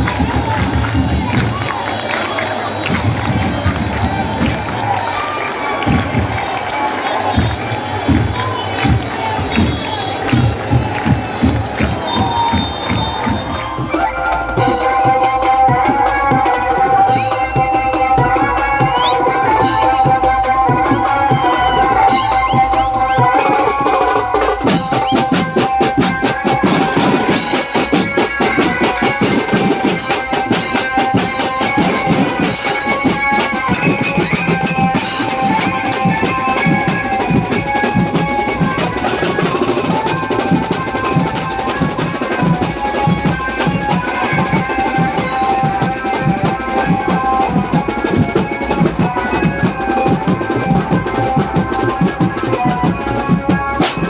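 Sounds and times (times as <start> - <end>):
sustained melody line: 14.0 - 54.0
fast dense drumming: 17.1 - 54.0.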